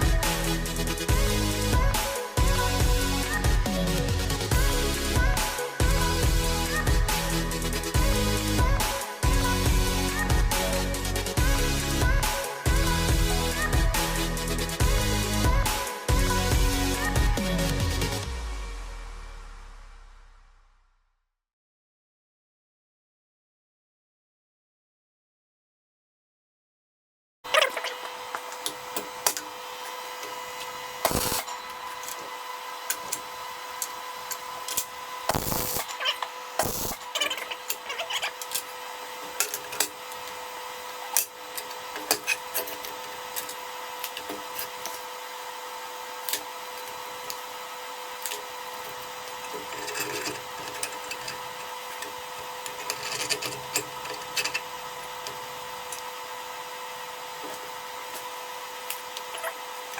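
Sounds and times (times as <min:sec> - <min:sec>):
arc welding crackle and spit: 0:27.5 - 0:59.9
steady electrical hum: 0:28.6 - 0:59.9
welding pops: 0:31.1 - 0:31.5, 0:34.8 - 0:37.1.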